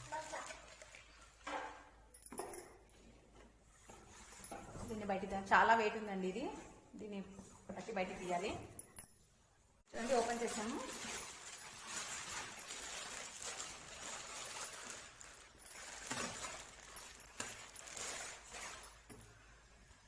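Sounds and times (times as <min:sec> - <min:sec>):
packaging rustling and crinkling: 0:10.0 - 0:19.1.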